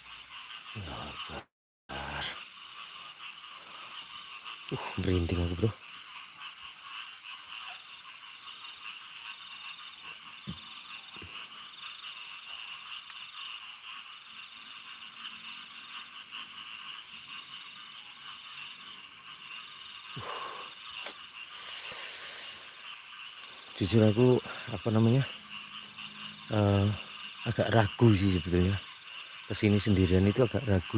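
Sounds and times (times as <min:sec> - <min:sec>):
night insects chirring: 0:00.0 - 0:30.9.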